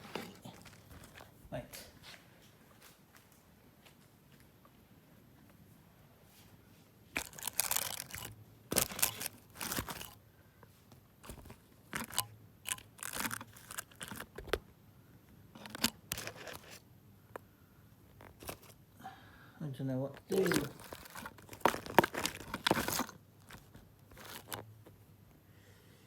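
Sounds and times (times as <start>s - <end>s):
crinkling and scraping handling: 0.0s - 3.0s, 6.3s - 14.8s, 15.5s - 18.9s, 20.0s - 25.3s.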